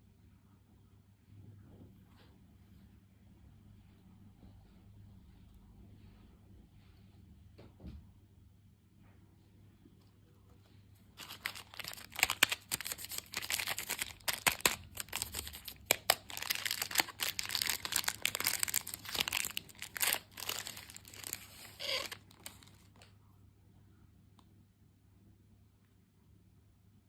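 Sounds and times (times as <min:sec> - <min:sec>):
plastic wrapper crinkling and tearing: 0:11.2 - 0:23.1.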